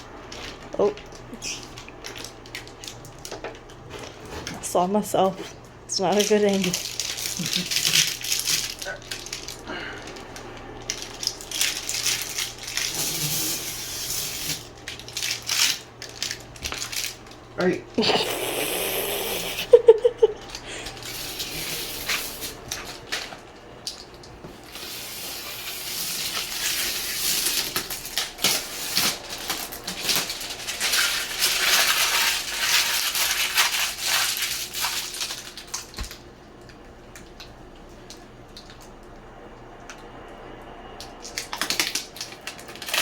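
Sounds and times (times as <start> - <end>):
packaging rustling: 5.4 - 17.6, 20.3 - 38.8, 41.2 - 43.0.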